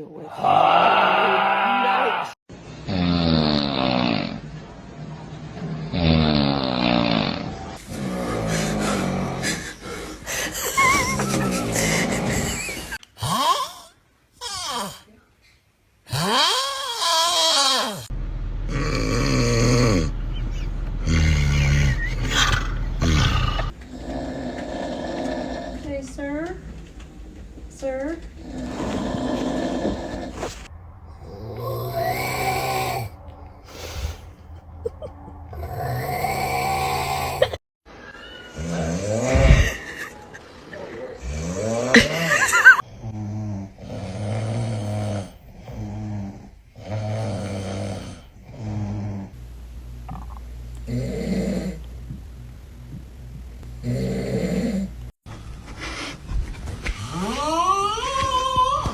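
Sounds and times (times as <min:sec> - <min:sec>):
man snoring: 0:05.9 - 0:10.3, 0:18.7 - 0:20.1, 0:21.0 - 0:25.8, 0:31.2 - 0:34.2, 0:35.5 - 0:37.6, 0:41.2 - 0:49.4, 0:50.9 - 0:51.8, 0:53.8 - 0:55.0
quiet breathing: 0:07.8 - 0:10.8, 0:32.4 - 0:34.7.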